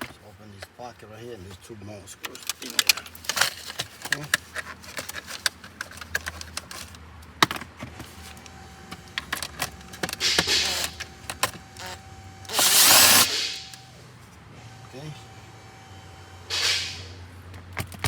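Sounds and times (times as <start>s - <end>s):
cordless power driver: 8.4s - 13.8s.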